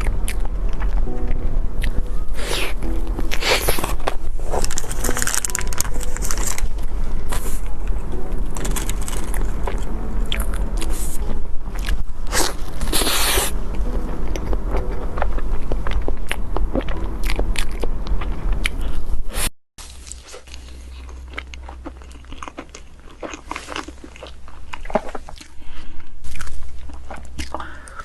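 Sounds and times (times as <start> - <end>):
chewing cake: 0.0 - 6.7, 14.4 - 19.0, 20.1 - 28.0
small clicks and crackles: 4.5 - 7.5.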